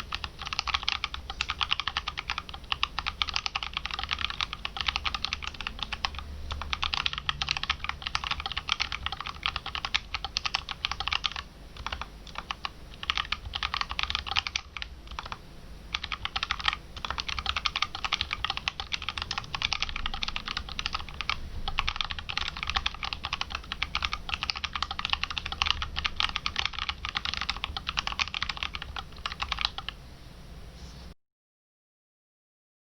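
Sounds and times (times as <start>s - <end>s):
mechanical keyboard typing: 0.0s - 30.0s.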